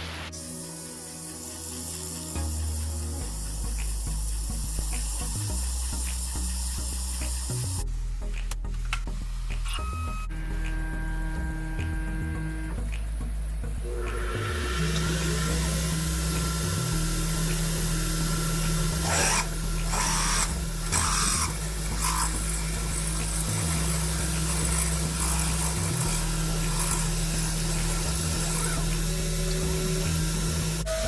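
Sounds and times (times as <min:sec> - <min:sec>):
cnc machine motor hum: 0:13.8 - 0:31.0.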